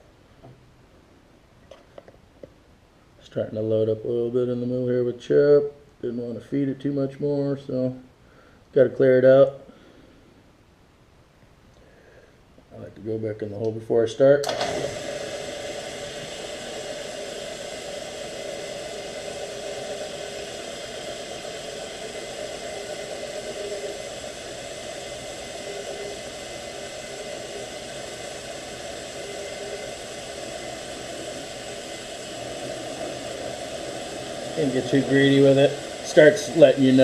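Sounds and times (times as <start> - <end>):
drill press drilling into metal: 14.4 - 37.0.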